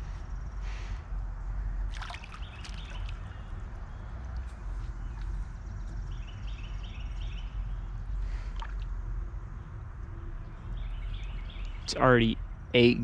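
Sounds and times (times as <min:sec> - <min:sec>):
water sloshing and trickling: 0:01.9 - 0:06.0, 0:08.2 - 0:09.0
bird chirping: 0:02.1 - 0:08.6, 0:09.4 - 0:13.0.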